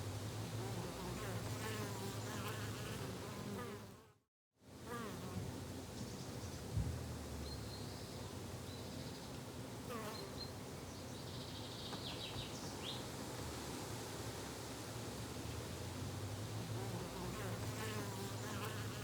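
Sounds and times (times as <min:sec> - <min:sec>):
insect buzzing: 0:00.7 - 0:04.2, 0:16.8 - 0:19.0.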